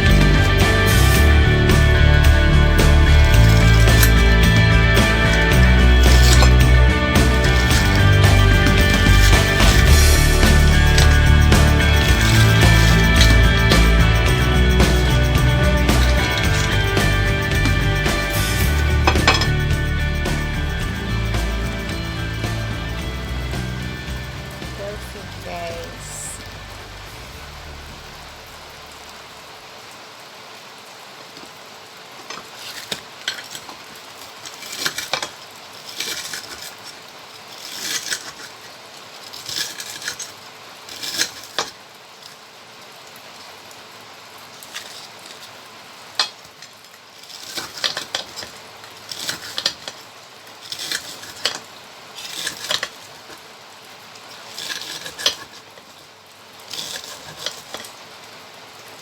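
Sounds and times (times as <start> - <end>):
utensil scraping a pan: 0.0 - 27.6, 32.3 - 41.8, 47.3 - 50.0, 50.6 - 53.4, 54.3 - 55.9, 56.7 - 58.0.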